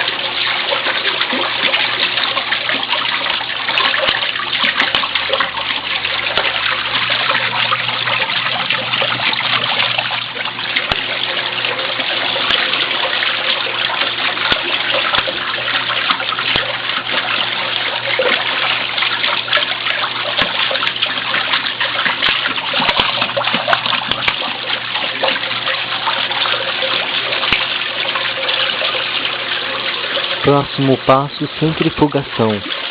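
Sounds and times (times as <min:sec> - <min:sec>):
water splashing in washing machine: 0:00.0 - 0:32.9.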